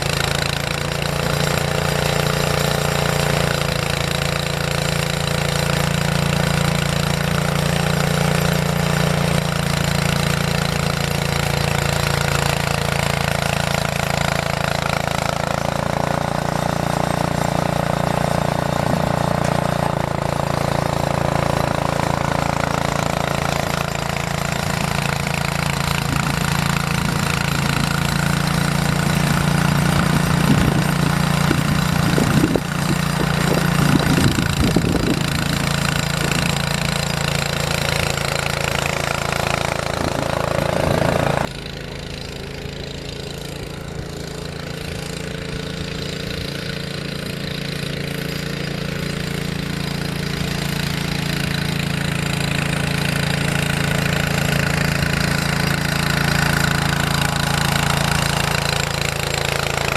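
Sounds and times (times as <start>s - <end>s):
snow-clearing machine engine drone: 0.0s - 59.9s.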